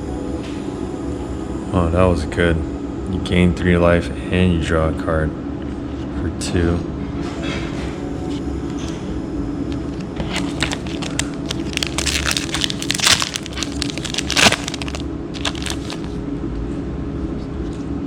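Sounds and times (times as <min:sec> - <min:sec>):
wrappers and cards crinkling: 0:10.2 - 0:16.2.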